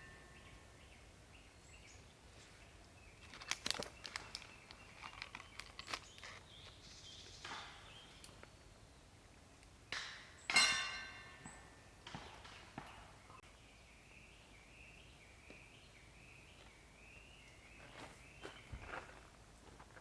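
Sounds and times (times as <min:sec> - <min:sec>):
sharp ringing clink: 0:10.5 - 0:11.8.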